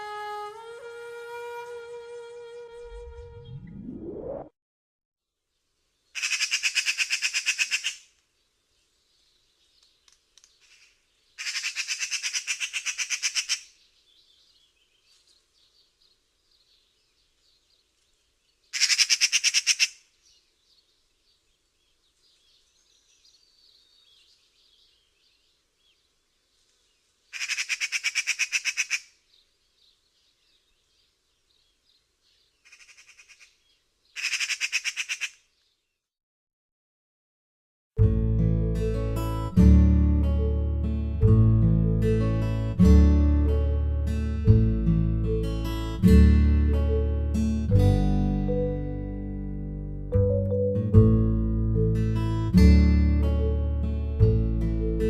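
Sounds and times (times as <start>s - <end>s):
faint birdsong: 5.4s - 36.1s
magpie chattering call: 6.2s - 8.1s, 11.4s - 13.7s, 18.8s - 20.0s, 27.3s - 29.1s, 32.7s - 33.5s, 34.2s - 35.4s.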